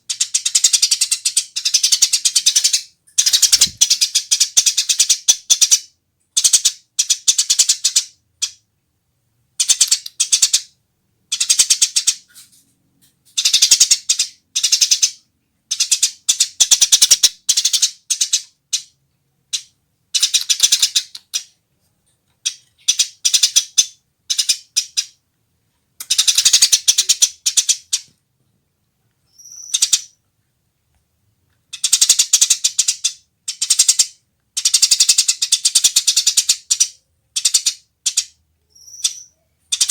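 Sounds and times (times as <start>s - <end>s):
sparrow chattering: 0.1s - 5.8s, 13.4s - 21.5s, 22.4s - 25.2s, 26.0s - 28.1s, 29.3s - 30.2s, 31.7s - 39.9s.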